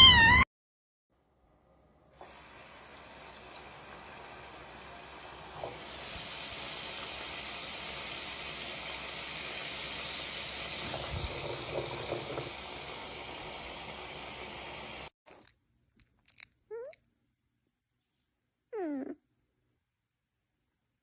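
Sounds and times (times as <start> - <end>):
water running: 2.2 - 15.5.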